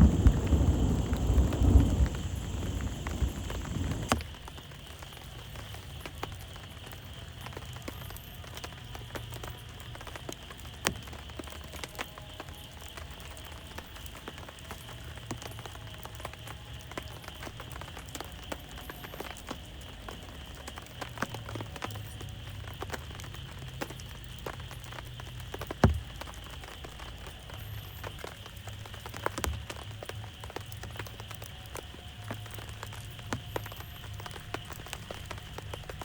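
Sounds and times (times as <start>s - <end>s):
low thunder rumble: 0.0s - 4.3s
raindrops ticking on a surface: 0.0s - 36.0s.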